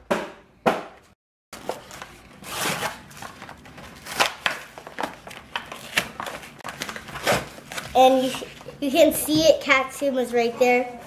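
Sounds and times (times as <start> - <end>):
packaging rustling and tearing: 1.6 - 8.7.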